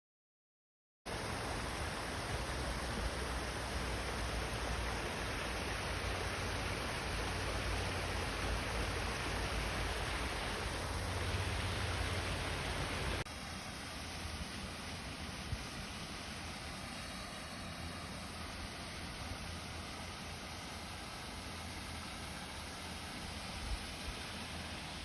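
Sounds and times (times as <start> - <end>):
rushing water: 1.1 - 25.0.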